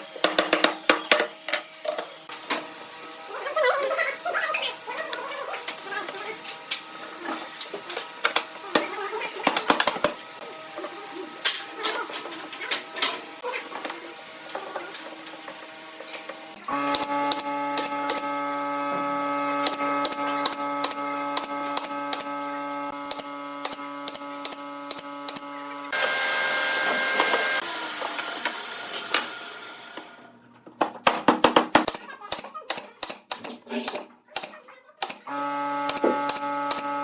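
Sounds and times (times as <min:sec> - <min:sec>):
electric motor humming: 0:15.3 - 0:30.3.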